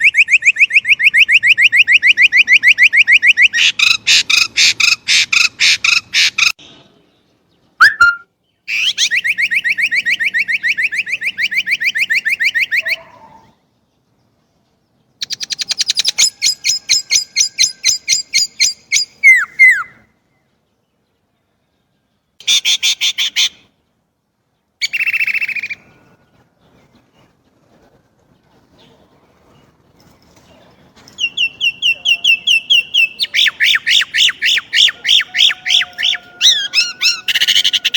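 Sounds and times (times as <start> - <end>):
bird calling rapid high notes: 7.8 - 13.0.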